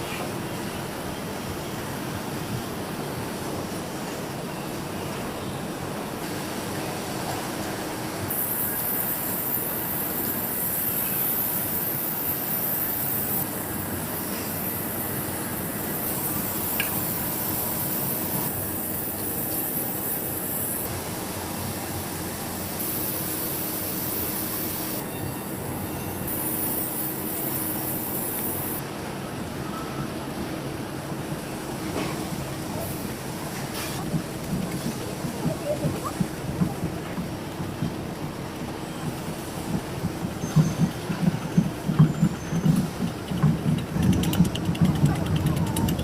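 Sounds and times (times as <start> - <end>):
high hiss: 8.3 - 28.8.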